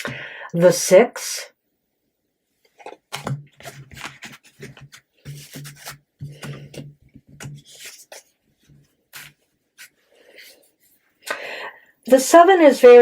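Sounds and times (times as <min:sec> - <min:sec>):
card scrapes and light taps: 0:02.8 - 0:10.5
cards sliding and rubbing: 0:02.8 - 0:10.7.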